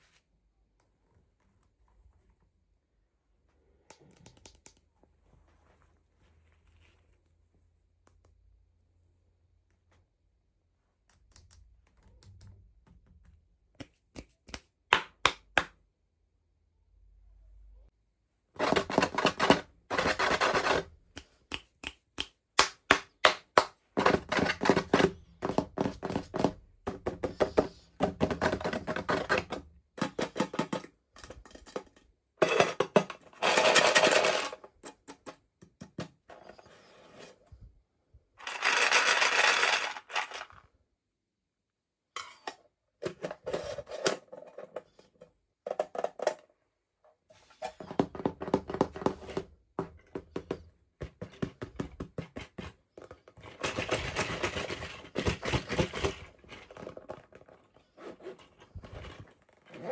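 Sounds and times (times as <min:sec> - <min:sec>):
plastic pieces tapping and clicking: 0:18.6 - 0:33.2.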